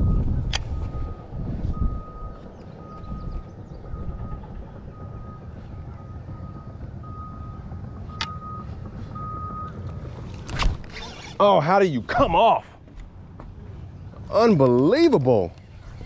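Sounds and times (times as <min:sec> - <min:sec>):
reversing alarm beeping: 0:00.0 - 0:10.2
low rumble: 0:00.0 - 0:11.0.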